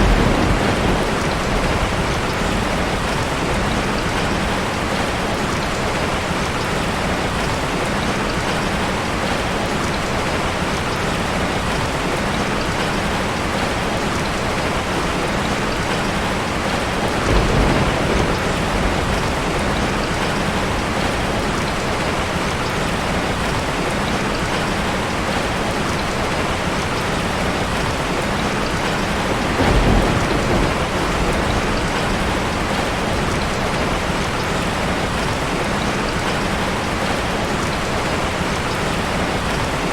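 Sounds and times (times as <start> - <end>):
low thunder rumbles: 0.0 - 7.6, 14.7 - 24.6, 27.4 - 36.9
heavy rain falling: 0.0 - 39.9.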